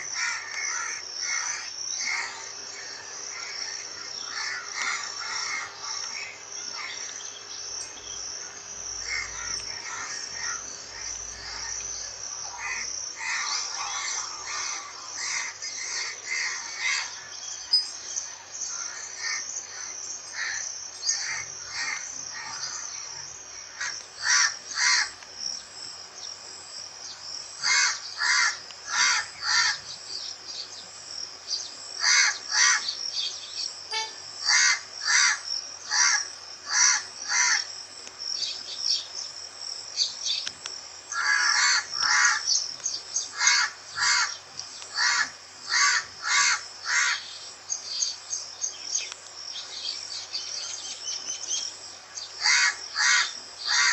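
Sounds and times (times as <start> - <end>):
crows cawing: 0.1 - 7.1, 9.0 - 17.3, 18.7 - 23.0, 23.7 - 25.2, 27.6 - 29.9, 32.0 - 32.9, 33.9 - 37.7, 41.1 - 42.5, 43.3 - 47.3, 52.4 - 53.9
high-pitched buzz: 33.9 - 34.3.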